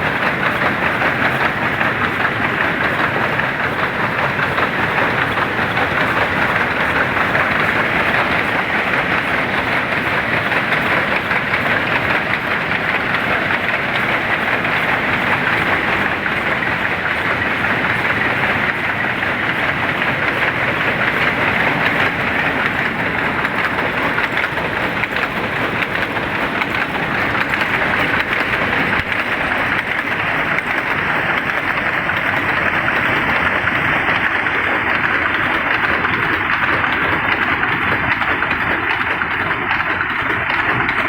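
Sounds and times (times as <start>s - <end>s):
weaving loom clattering: 0.0s - 41.0s.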